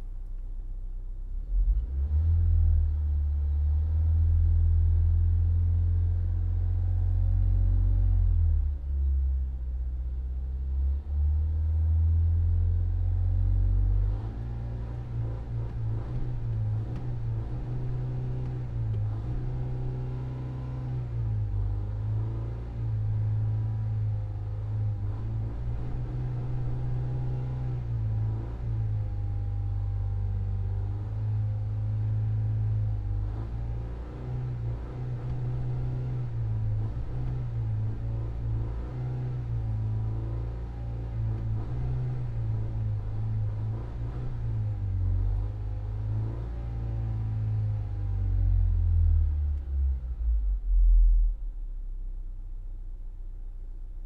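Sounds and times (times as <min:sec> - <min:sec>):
low engine rumble: 0:00.0 - 0:03.9, 0:47.1 - 0:54.0
car engine revving: 0:33.2 - 0:48.4.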